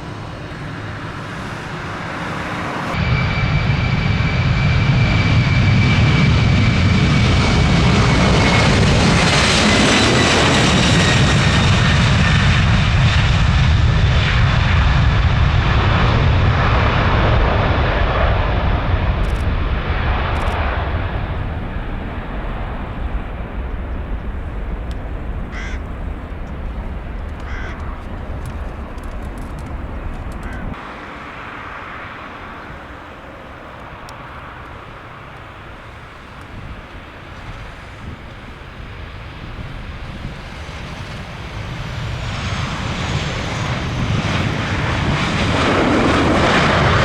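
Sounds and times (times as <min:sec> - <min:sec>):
airliner jet engines passing: 0:00.0 - 0:47.0.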